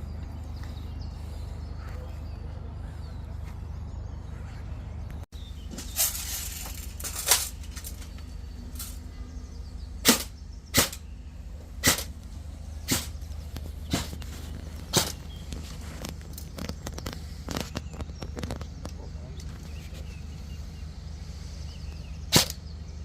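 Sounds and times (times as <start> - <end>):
steady low rumble: 0.0 - 23.0
airsoft gun shots: 10.0 - 11.0, 11.8 - 12.1, 12.9 - 13.1, 22.3 - 22.6.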